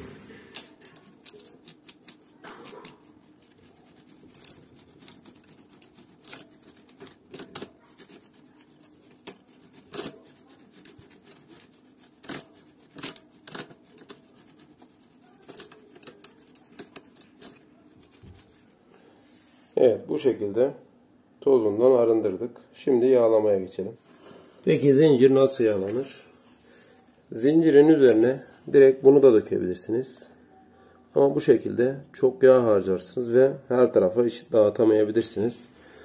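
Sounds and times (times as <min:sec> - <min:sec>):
scrubbing bike chain: 0:00.8 - 0:18.5.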